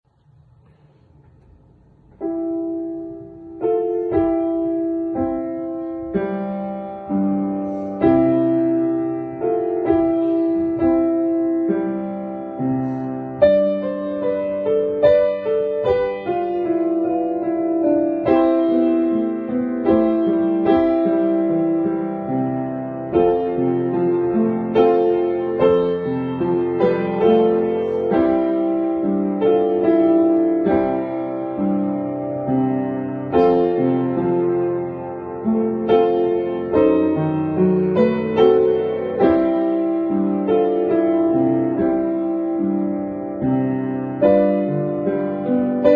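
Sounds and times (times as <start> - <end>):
slow piano music: 0.1 - 45.9.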